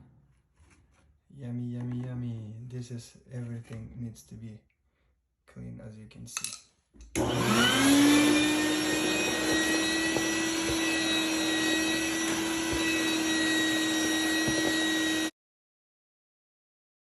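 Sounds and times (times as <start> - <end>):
vacuum cleaner air rush: 7.2 - 15.3
vacuum cleaner motor whine: 7.2 - 15.3.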